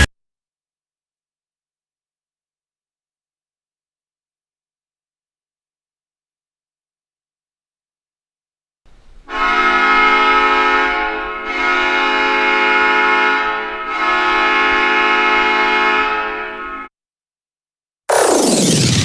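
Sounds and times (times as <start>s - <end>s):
arena goal horn: 9.3s - 16.9s.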